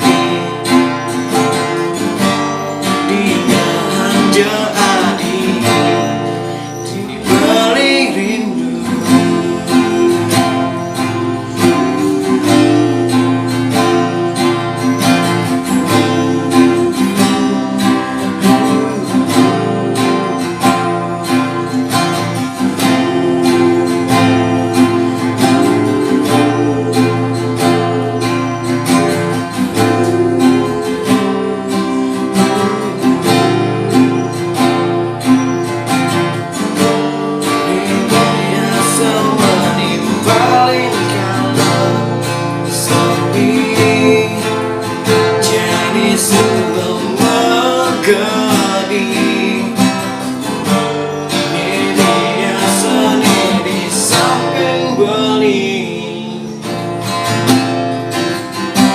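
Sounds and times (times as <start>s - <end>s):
acoustic guitar pop music: 0.0s - 58.9s.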